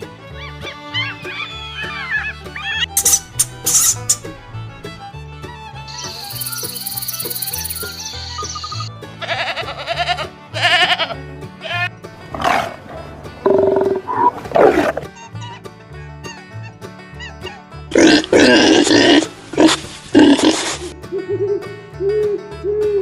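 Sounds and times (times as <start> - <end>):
children's background music: 0.0 - 23.0
animal cries: 0.4 - 4.2
high buzzing with ticks: 5.9 - 8.8.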